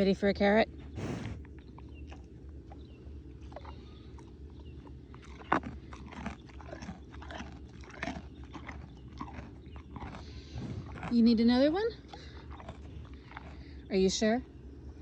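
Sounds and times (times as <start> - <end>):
cow crunching a carrot: 1.0 - 14.4.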